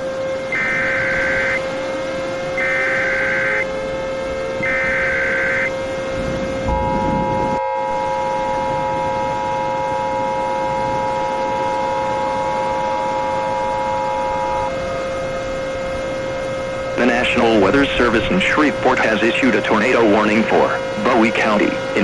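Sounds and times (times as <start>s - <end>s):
constant hum: 0.0s - 22.0s
two-tone attention signal: 0.5s - 1.6s, 2.6s - 3.6s, 4.6s - 5.7s, 6.6s - 14.7s
warbling digital data tones: 0.5s - 1.6s, 2.6s - 3.6s, 4.6s - 5.7s, 6.6s - 14.7s.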